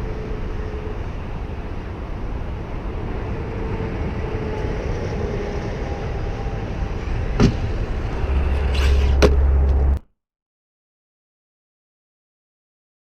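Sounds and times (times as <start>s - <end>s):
wind rumble on microphone: 0.0s - 10.0s.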